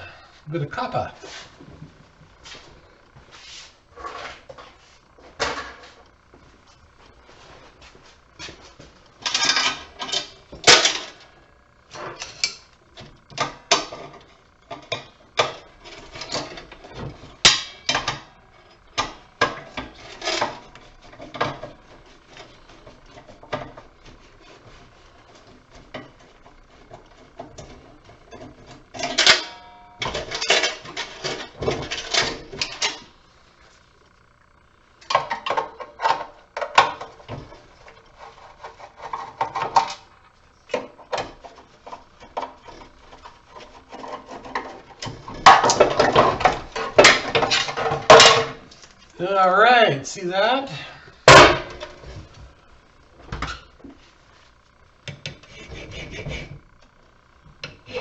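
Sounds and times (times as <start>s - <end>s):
metal light fixture parts clattering: 9.2s - 11.3s, 12.0s - 24.6s, 25.4s - 33.1s, 40.7s - 48.8s.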